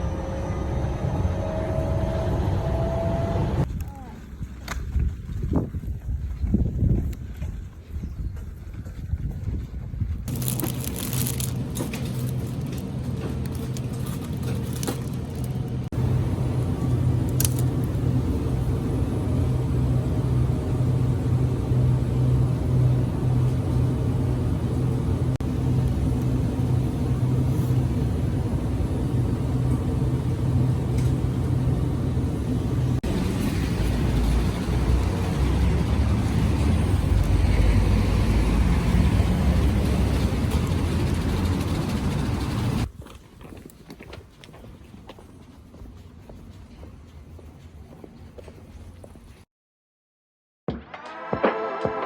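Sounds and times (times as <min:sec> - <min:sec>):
road vehicle running noise: 0:00.0 - 0:03.7, 0:10.2 - 0:42.9
low hum: 0:00.0 - 0:03.8, 0:10.3 - 0:42.9
rough rumble: 0:10.2 - 0:42.9.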